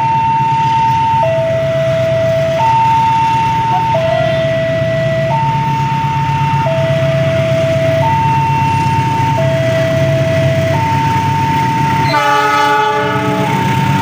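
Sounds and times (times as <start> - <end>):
low engine rumble: 0.0 - 14.0.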